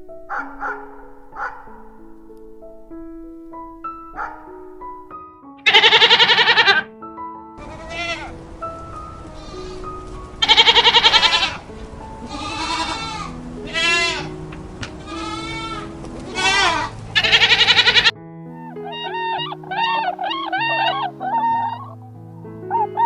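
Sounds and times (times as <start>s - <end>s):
piano music: 0.0s - 23.0s
goats bleating: 5.7s - 6.8s, 7.6s - 18.1s.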